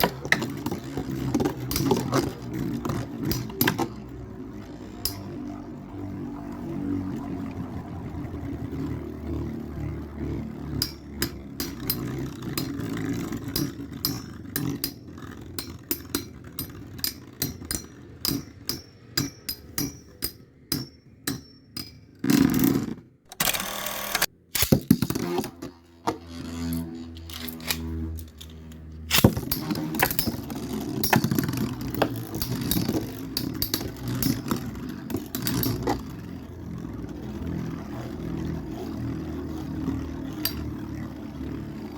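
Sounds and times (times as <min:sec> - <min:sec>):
spinning tops clacking together: 0:00.0 - 0:04.2, 0:26.7 - 0:36.1
spinning tops whirring: 0:00.0 - 0:07.2, 0:08.5 - 0:41.9.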